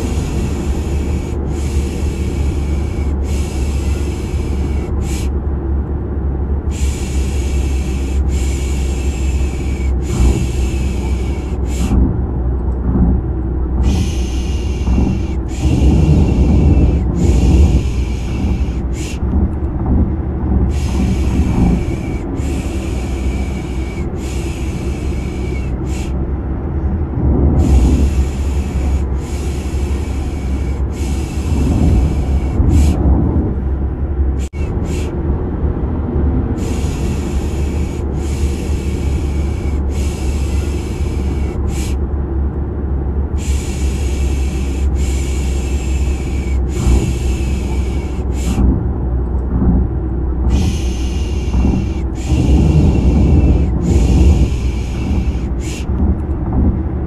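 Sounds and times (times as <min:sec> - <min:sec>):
car engine drone inside car: 0:00.0 - 0:57.0
person shushing: 0:50.5 - 0:55.9.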